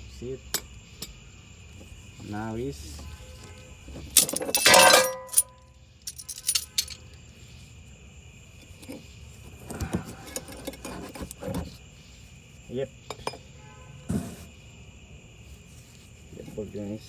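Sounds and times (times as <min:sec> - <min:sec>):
light metal clinks: 0:04.2 - 0:07.0.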